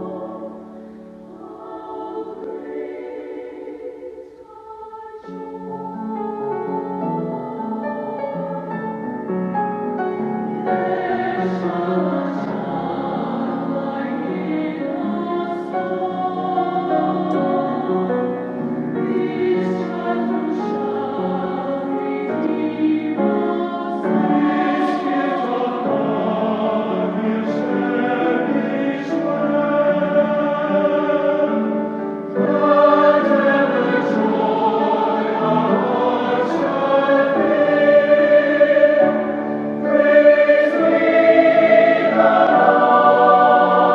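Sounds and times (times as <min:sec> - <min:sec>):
choir singing: 0:00.0 - 0:43.9.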